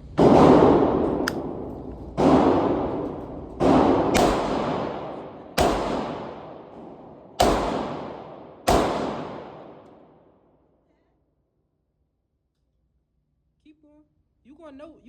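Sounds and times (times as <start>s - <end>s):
pistol shots echoing: 0.1s - 10.3s.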